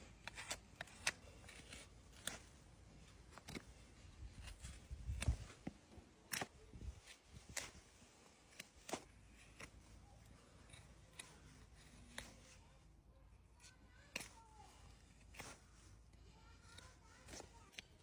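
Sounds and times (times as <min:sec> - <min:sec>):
hoof trimming snips and clicks: 0:00.2 - 0:03.8, 0:04.4 - 0:07.8, 0:08.5 - 0:12.6.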